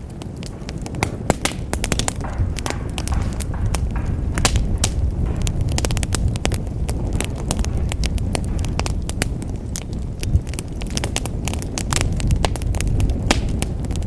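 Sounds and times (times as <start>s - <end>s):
fire crackling and popping: 0.0s - 14.0s
low roar of flames: 0.0s - 14.0s.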